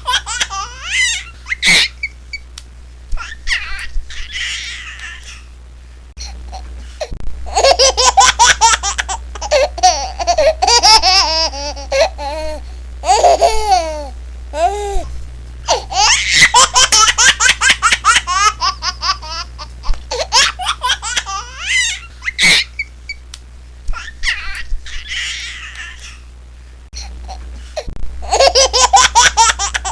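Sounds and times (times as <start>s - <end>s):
baby laughing: 0.0s - 2.2s, 3.2s - 5.5s, 7.5s - 15.1s, 15.7s - 22.9s, 23.9s - 26.2s, 28.2s - 29.9s.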